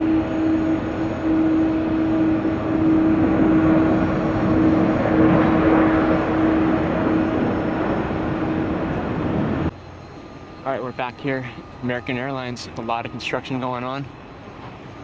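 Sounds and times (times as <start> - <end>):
rushing noise: 0.0 - 9.7
jet engines humming: 0.0 - 15.0.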